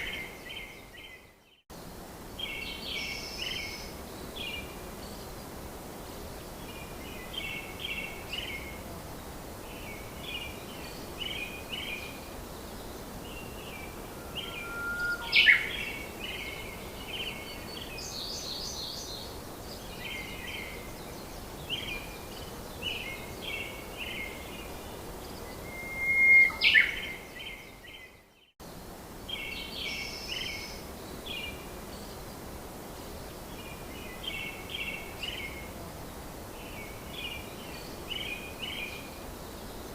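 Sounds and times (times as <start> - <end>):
steady background hiss: 0.0 - 39.9
birds chirping: 9.7 - 28.5
bird call with rising whistle: 13.2 - 16.7, 25.5 - 27.2.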